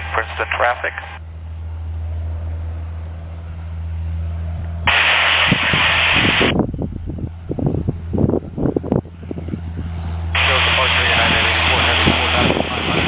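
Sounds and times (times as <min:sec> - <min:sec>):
radio static burst: 0:00.0 - 0:01.2, 0:04.9 - 0:06.6, 0:10.4 - 0:13.0
low rumbles: 0:00.0 - 0:13.0
steady low hum: 0:00.0 - 0:13.0.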